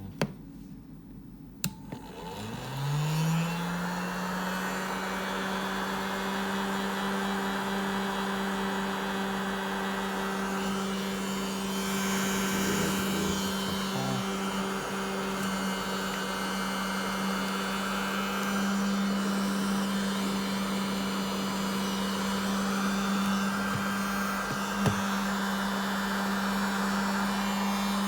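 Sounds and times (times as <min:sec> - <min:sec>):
heat gun switch click: 0:01.6 - 0:02.0
heat gun fan humming: 0:01.6 - 0:28.0.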